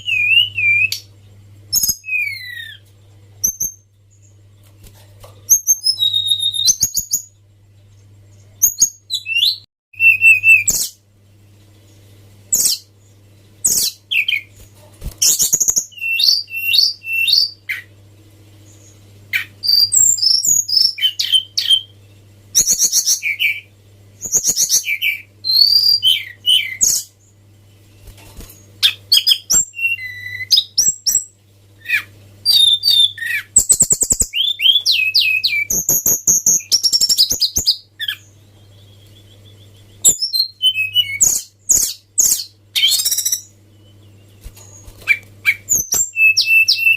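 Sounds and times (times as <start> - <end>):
bird singing whistles and trills: 0.0 - 1.1, 1.7 - 2.8, 5.5 - 7.4, 8.6 - 11.0, 12.5 - 12.9, 13.6 - 14.5, 15.2 - 17.9, 18.6 - 27.2, 28.8 - 46.9
faint low hum: 0.0 - 46.9.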